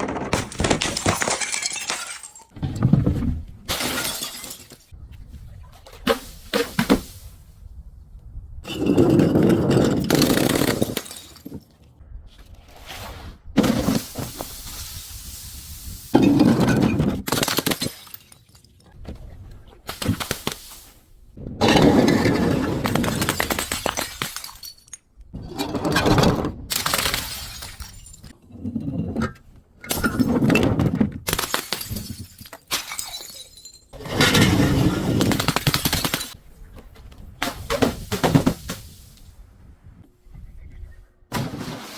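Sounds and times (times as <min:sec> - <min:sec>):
glass smashing and crunching: 0:00.3 - 0:02.6, 0:03.7 - 0:04.9, 0:16.2 - 0:18.8, 0:21.7 - 0:25.0, 0:31.3 - 0:36.4.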